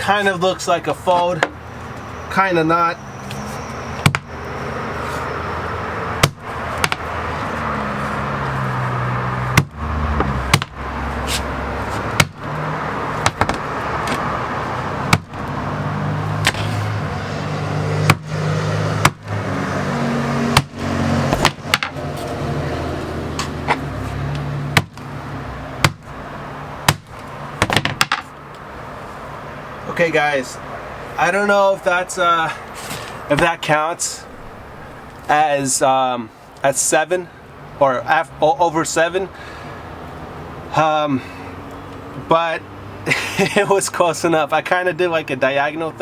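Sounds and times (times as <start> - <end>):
sledgehammer striking paper: 13.2 - 13.6, 16.4 - 16.8, 20.6 - 22.0, 24.8 - 25.1, 26.9 - 28.3.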